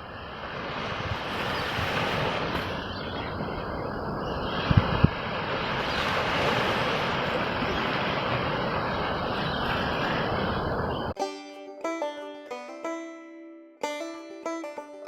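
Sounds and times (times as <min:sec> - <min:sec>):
sea rushing: 0:00.0 - 0:11.2
wind on microphone: 0:00.0 - 0:11.2
banjo music: 0:11.2 - 0:15.0.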